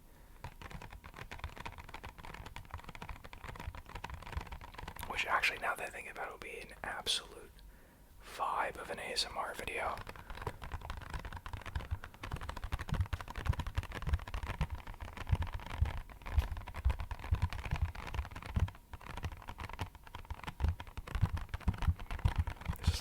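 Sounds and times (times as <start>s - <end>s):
fingertips tapping on a box: 0.4s - 5.1s, 9.7s - 22.8s.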